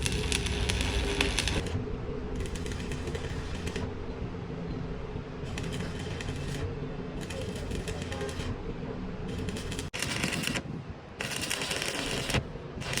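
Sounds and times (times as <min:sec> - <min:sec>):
rapid crackling clicks: 0:00.0 - 0:01.8, 0:02.4 - 0:03.9, 0:05.5 - 0:08.6, 0:09.3 - 0:10.6, 0:11.2 - 0:13.0
low mechanical hum: 0:00.0 - 0:13.0.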